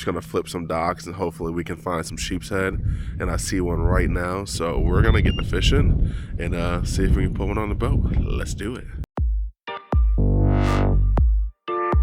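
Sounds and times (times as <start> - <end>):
heavy bass-drum hits: 9.2 - 11.5
electronic music: 9.2 - 12.0
synthesizer: 9.8 - 12.0
noisy riser: 10.3 - 11.2.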